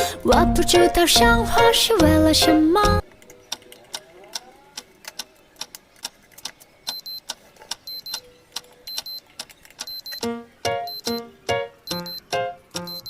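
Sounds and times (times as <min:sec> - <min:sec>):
sharp clicks and light taps: 0:03.2 - 0:10.3, 0:11.9 - 0:13.0.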